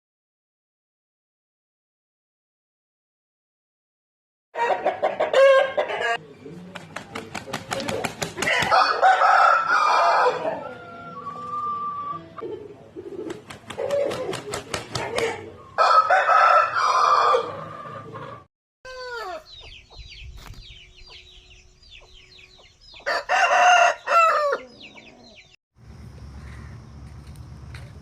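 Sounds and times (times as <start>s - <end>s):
chicken crowing and clucking: 4.6s - 6.2s, 8.4s - 12.4s, 15.0s - 19.8s, 22.5s - 25.5s
chicks peeping: 19.0s - 25.5s.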